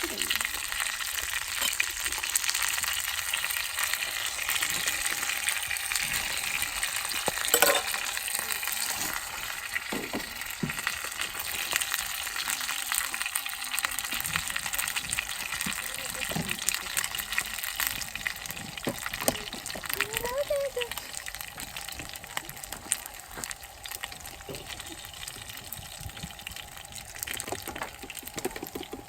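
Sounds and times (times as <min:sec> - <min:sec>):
dumplings sizzling in oil: 0:00.0 - 0:29.0.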